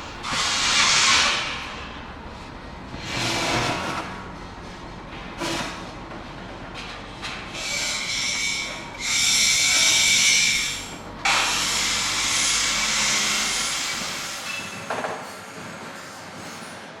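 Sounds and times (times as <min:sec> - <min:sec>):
machinery hissing bursts: 0:00.0 - 0:02.2.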